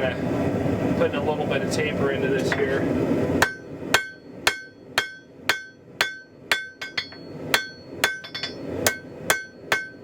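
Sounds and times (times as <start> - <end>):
hammer striking steel on anvil: 3.4 - 10.0.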